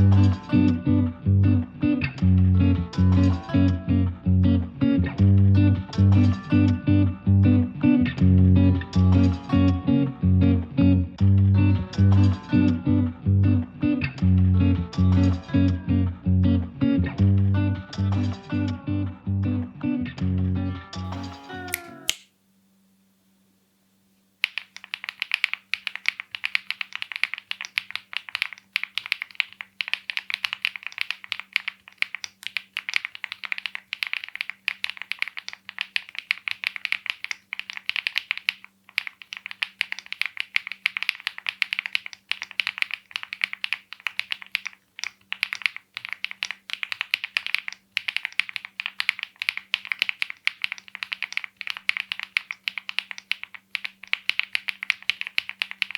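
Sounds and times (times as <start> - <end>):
mechanical keyboard typing: 24.4 - 55.9.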